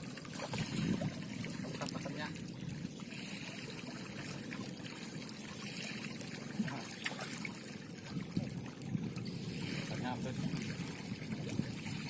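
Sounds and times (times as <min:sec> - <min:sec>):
water trickling and lapping: 0:00.0 - 0:12.0
small clicks and splashes: 0:05.8 - 0:09.3.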